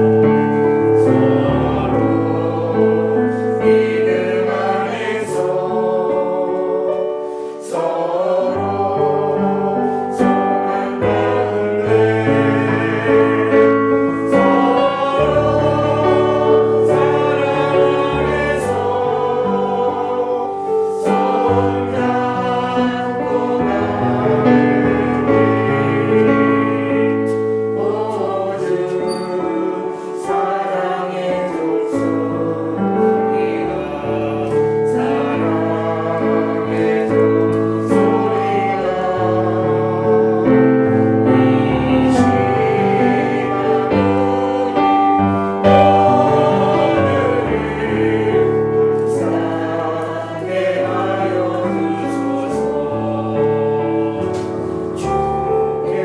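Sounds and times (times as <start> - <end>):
choir singing a hymn: 0.0 - 56.0.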